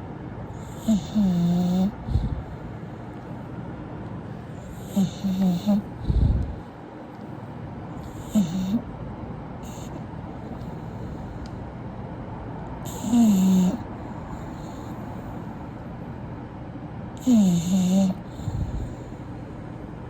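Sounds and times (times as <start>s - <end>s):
dog snoring: 0.6s - 2.7s, 4.5s - 6.6s, 8.0s - 8.9s, 9.6s - 11.4s, 12.8s - 15.5s, 17.2s - 19.4s.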